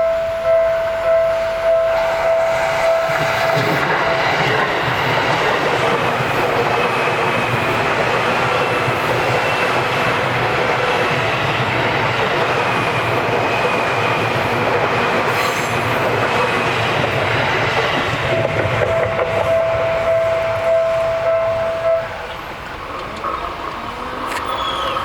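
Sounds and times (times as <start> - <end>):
strong steady tone: 0.0 - 5.7, 17.1 - 22.4
train wheels clattering over rails: 1.9 - 25.0.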